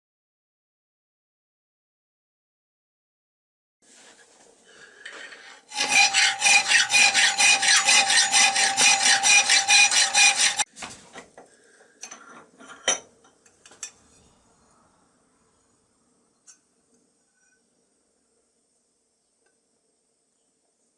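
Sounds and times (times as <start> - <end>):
hand file rasping on metal: 5.7 - 10.7
faint metallic ringing: 12.0 - 18.4.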